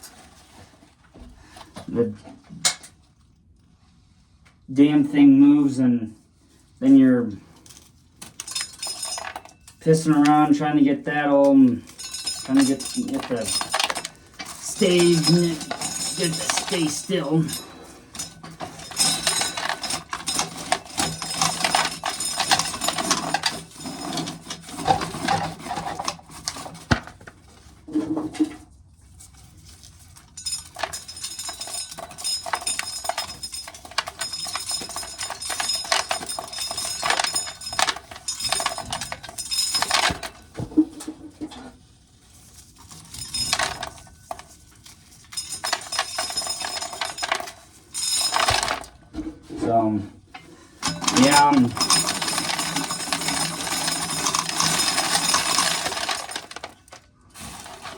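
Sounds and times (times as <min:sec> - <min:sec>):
corn kernels rattling into pail: 0:11.8 - 0:27.2, 0:30.4 - 0:41.1, 0:42.4 - 0:44.6, 0:45.2 - 0:49.0, 0:50.8 - 0:57.9.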